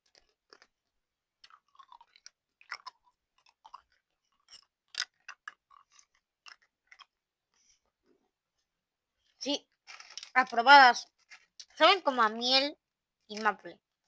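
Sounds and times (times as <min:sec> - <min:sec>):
gummy candy chewing: 0:00.0 - 0:00.8, 0:01.4 - 0:07.7
wet mouth clicks and smacks: 0:01.4 - 0:07.1.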